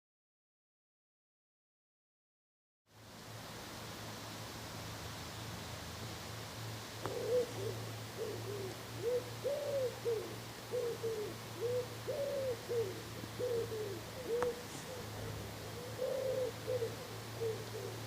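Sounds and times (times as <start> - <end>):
low steady hum: 2.9 - 18.0
pigeon cooing: 7.0 - 18.0.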